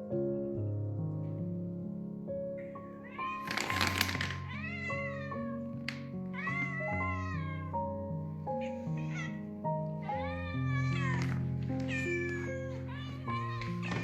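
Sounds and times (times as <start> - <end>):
gentle background music: 0.0 - 14.0
cat meowing: 2.9 - 8.0, 8.6 - 14.0.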